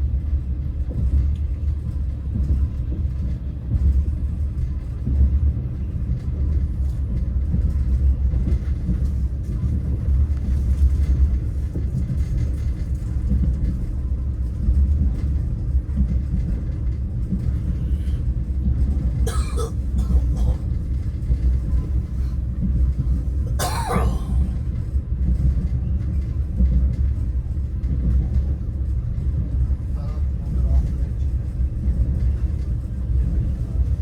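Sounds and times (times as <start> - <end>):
train rumble inside carriage: 0.0 - 34.0
person coughing: 19.3 - 20.6, 23.5 - 24.5.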